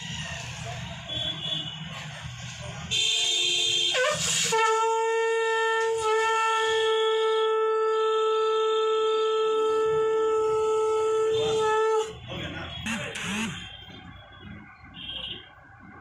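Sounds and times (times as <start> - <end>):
conch shell blown: 3.9 - 12.1.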